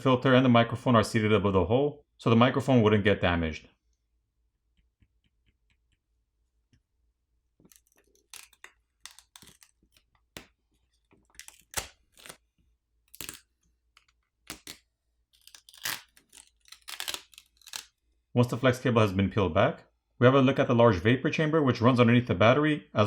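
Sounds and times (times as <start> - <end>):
small clicks and scrapes: 7.6 - 12.4, 13.1 - 18.1.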